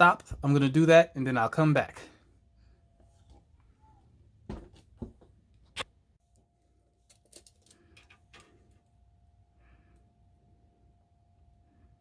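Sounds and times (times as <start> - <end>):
faint steady tone: 2.0 - 4.5, 6.1 - 12.0.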